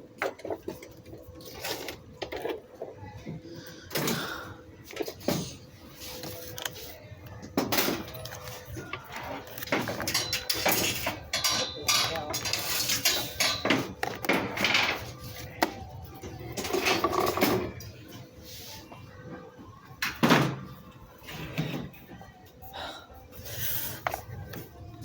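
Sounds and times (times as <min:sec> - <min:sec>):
plastic vacuum parts clattering: 0:04.9 - 0:15.8.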